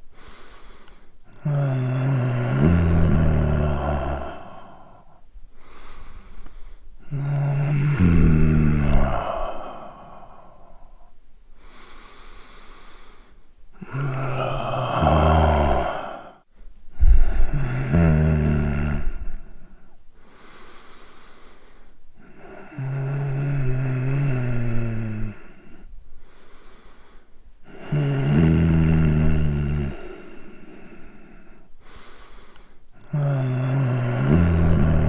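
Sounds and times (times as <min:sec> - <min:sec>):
person snoring: 0:00.0 - 0:35.0
breathing out: 0:00.1 - 0:18.2, 0:19.0 - 0:22.6, 0:25.0 - 0:35.0.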